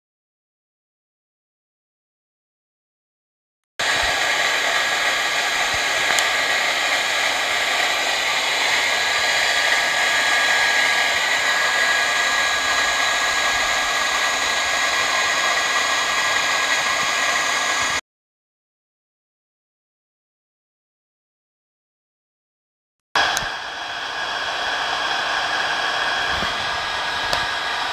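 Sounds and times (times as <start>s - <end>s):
electric air blower running: 3.8s - 18.0s, 23.2s - 27.9s.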